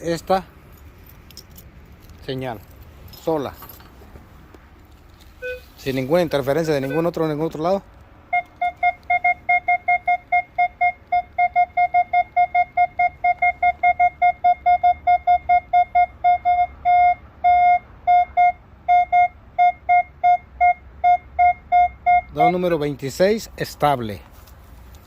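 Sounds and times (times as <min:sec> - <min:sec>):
metal detector beeping: 0:05.4 - 0:07.2, 0:08.3 - 0:22.6.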